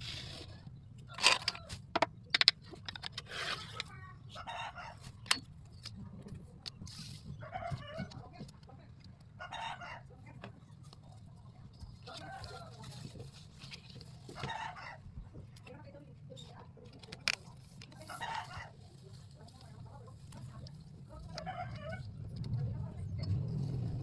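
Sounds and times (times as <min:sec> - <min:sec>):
chickens clucking: 0:03.8 - 0:05.2, 0:09.3 - 0:12.9, 0:14.1 - 0:15.4.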